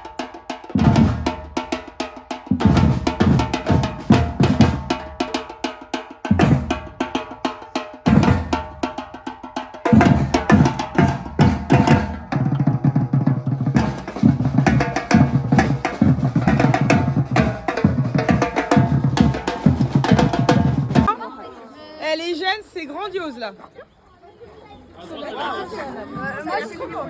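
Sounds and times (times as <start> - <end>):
samba drum ensemble: 0.0 - 21.2.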